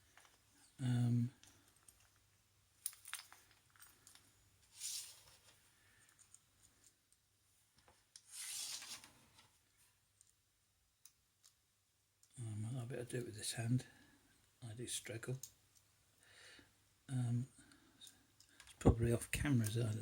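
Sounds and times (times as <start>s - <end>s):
soft hissy rubbing: 4.6s - 5.7s, 8.3s - 9.4s.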